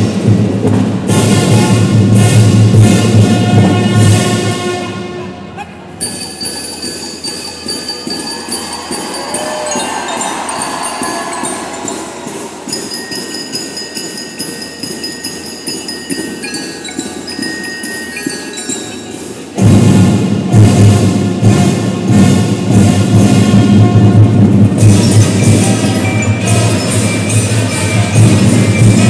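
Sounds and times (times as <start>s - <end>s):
light percussion beat: 0.0s - 4.9s, 5.6s - 29.0s
bell lyre melody: 6.0s - 19.6s.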